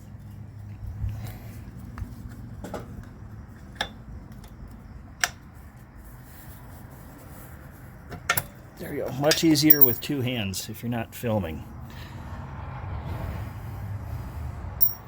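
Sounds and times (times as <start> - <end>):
metal clicks and taps of tools: 3.7 - 4.6, 8.2 - 8.5, 9.2 - 10.1.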